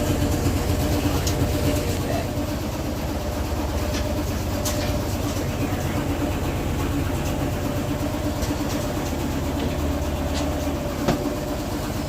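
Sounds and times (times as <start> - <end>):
washing machine spinning: 0.0 - 12.0.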